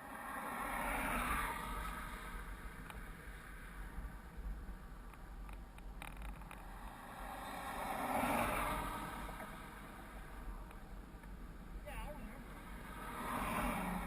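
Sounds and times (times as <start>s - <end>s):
vehicle passing: 6.6s - 10.7s, 11.7s - 14.0s.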